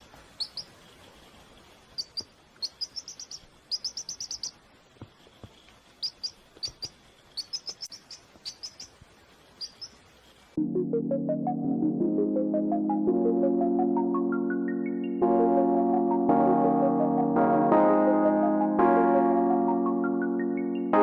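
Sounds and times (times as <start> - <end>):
chick peeping: 0.3 - 1.1, 1.8 - 4.6, 6.0 - 9.0, 9.6 - 10.0.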